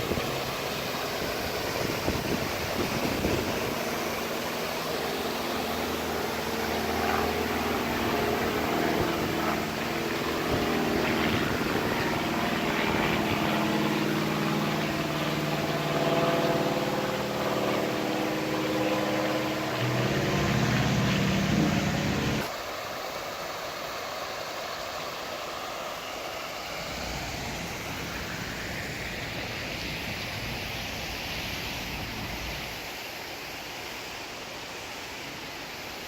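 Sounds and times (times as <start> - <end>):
stream water running: 0.0 - 36.0
low engine hum: 2.0 - 22.5.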